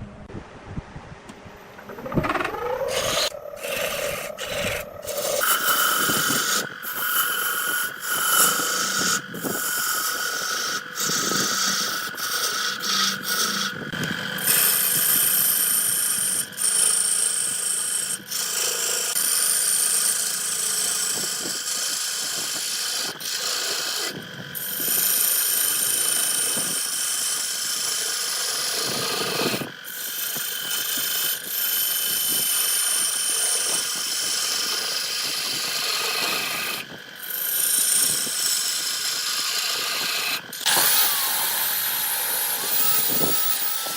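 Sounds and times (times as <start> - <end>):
lathe machine hum: 1.3 - 43.9
lathe tool scraping wood: 1.7 - 43.9.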